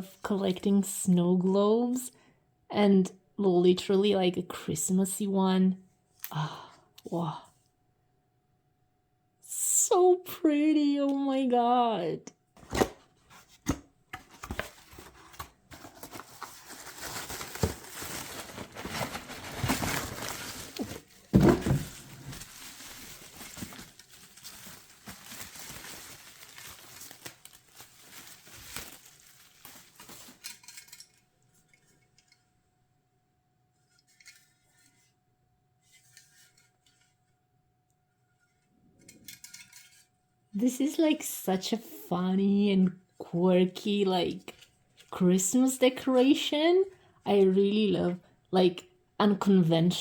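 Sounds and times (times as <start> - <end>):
packaging crinkling and tearing: 14.2 - 31.0.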